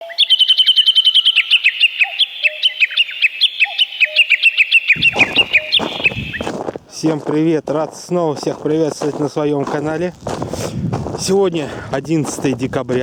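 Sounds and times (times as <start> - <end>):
bird chirping rapidly: 0.0 - 6.6.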